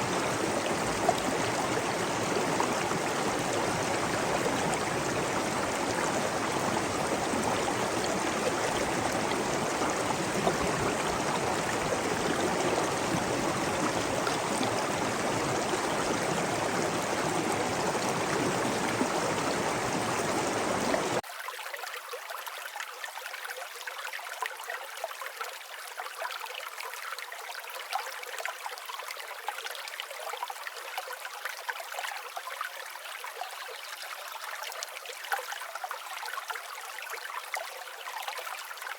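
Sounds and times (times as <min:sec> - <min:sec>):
stream water rushing: 0:00.0 - 0:21.2.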